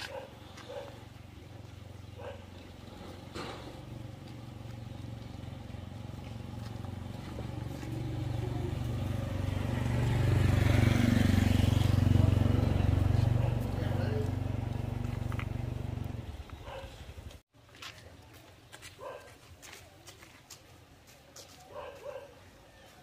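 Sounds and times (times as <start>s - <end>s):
engine humming: 0.0s - 17.4s.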